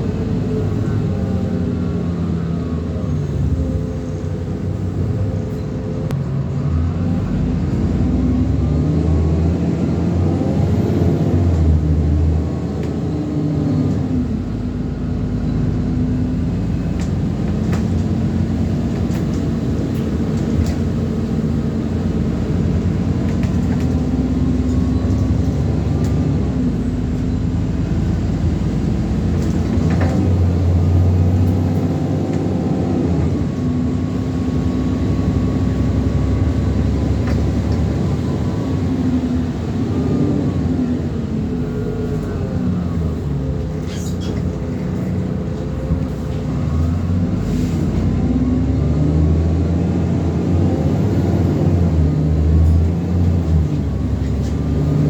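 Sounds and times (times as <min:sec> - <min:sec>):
bus diesel engine accelerating: 0:00.0 - 0:55.0
bus body rattling and knocking: 0:11.1 - 0:47.4, 0:49.6 - 0:55.0.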